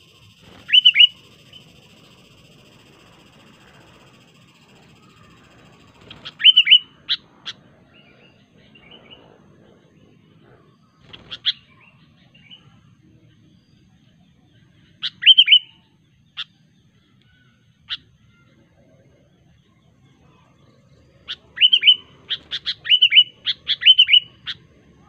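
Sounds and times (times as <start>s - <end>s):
bulbul chirping: 0.0s - 7.7s, 21.0s - 24.7s.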